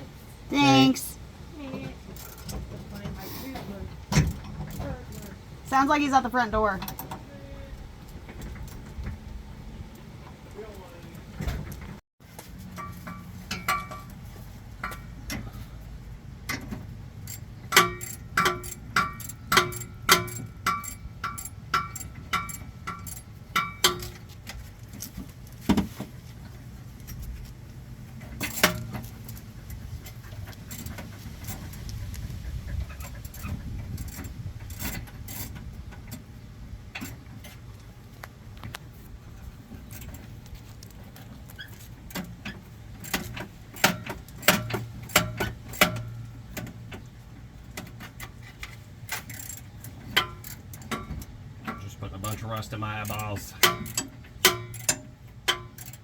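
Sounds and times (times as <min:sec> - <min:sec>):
hand tools clinking on metal: 0:12.6 - 0:15.6, 0:17.2 - 0:25.2, 0:47.8 - 0:56.0
sharp metal knocks: 0:12.7 - 0:14.2, 0:16.5 - 0:24.2, 0:53.1 - 0:56.0.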